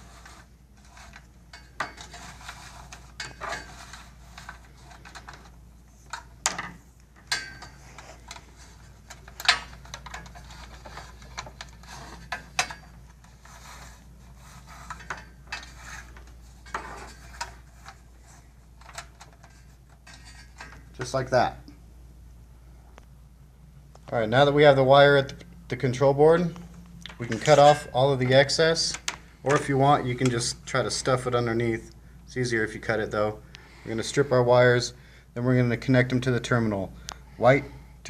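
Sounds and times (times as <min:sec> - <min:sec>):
wire scraping against metal tower: 0:00.0 - 0:21.1.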